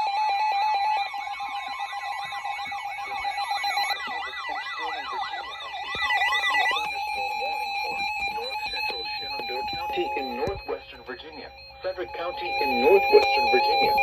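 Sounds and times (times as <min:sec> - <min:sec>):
electronic siren wail: 0:00.0 - 0:14.0
steady high alert tone: 0:01.2 - 0:14.0.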